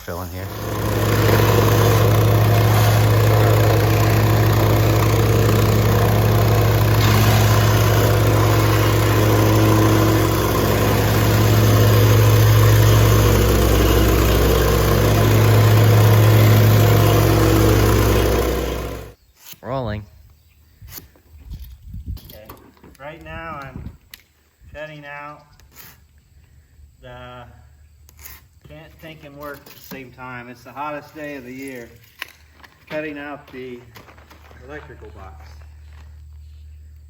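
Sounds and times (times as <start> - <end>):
gasoline engine running: 0.3 - 19.2.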